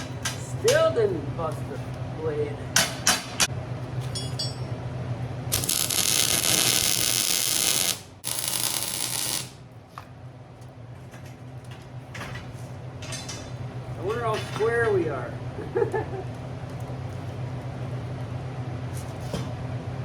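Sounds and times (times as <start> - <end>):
angle grinder cutting steel: 5.5 - 9.5.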